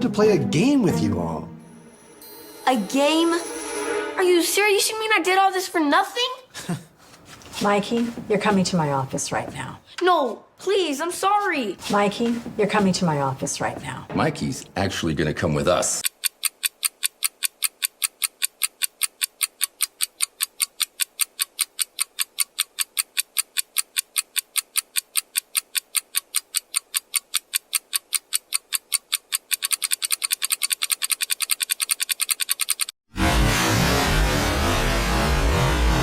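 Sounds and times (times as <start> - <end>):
rapid clock ticking: 15.9 - 33.0.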